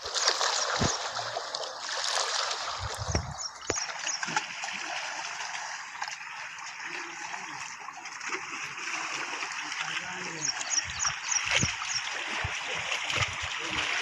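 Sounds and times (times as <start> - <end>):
water flowing and splashing: 0.0 - 14.0
low thumps: 2.8 - 3.8.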